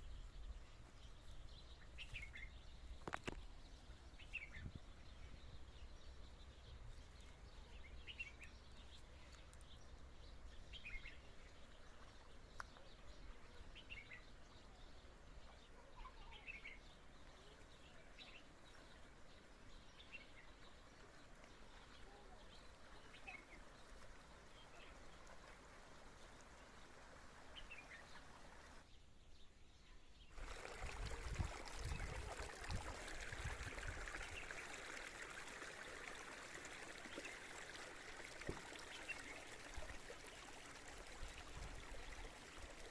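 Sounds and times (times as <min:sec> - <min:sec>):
running water from spring: 0:00.0 - 0:28.9, 0:30.2 - 0:42.9
faint birds chirping: 0:00.0 - 0:42.9.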